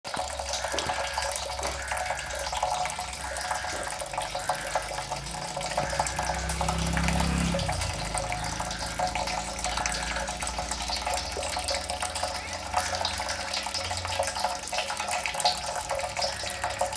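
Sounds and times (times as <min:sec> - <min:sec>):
water drops falling: 0:00.1 - 0:16.9
low rising tone: 0:05.0 - 0:11.3.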